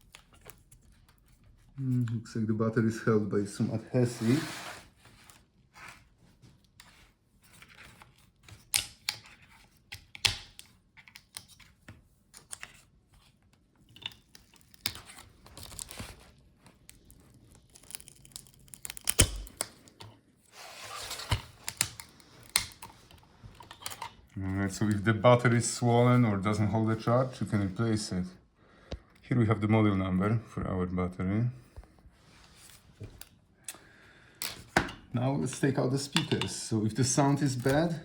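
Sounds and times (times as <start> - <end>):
adhesive strips tearing: 16.9 - 19.8.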